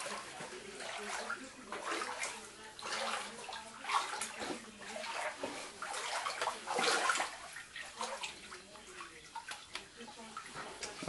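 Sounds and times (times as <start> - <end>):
floodwater sloshing and splashing: 0.0 - 11.0.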